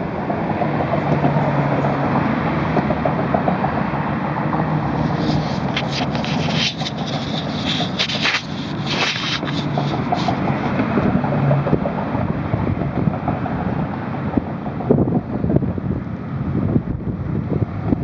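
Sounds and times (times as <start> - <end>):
wind rumbling on microphone: 0.0 - 18.0
hands scraping soil: 4.6 - 11.3.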